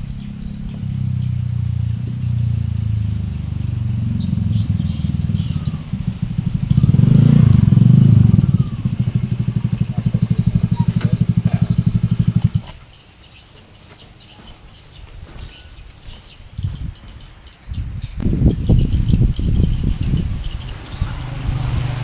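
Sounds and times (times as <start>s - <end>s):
diesel engine running: 0.0s - 12.8s, 18.4s - 22.0s.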